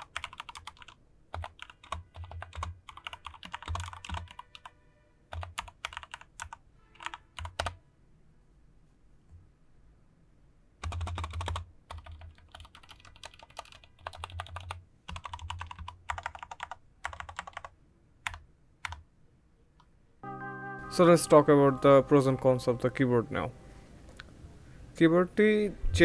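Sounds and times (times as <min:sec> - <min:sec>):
mechanical keyboard typing: 0:00.0 - 0:04.7, 0:05.3 - 0:07.8, 0:10.8 - 0:19.0.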